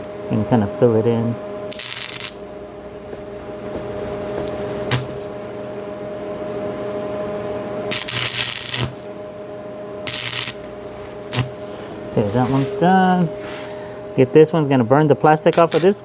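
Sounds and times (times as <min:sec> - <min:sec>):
electrical hum: 0:00.0 - 0:16.0
welding arc crackling and hissing: 0:01.7 - 0:02.6, 0:03.6 - 0:05.5, 0:07.9 - 0:09.2, 0:10.1 - 0:11.6, 0:15.5 - 0:16.0.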